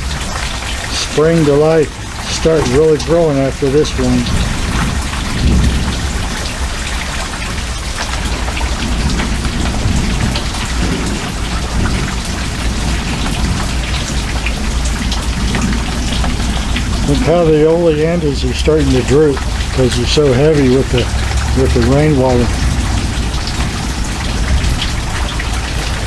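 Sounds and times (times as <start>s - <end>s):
heavy rain pouring: 0.0s - 26.0s
low rumble: 8.4s - 26.0s.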